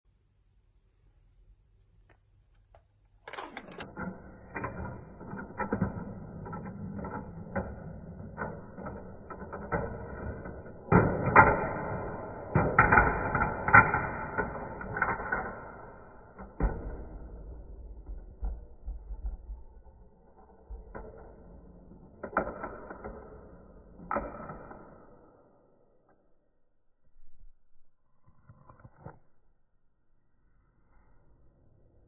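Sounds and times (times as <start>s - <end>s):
marbles rolling on plastic track: 3.2s - 25.3s.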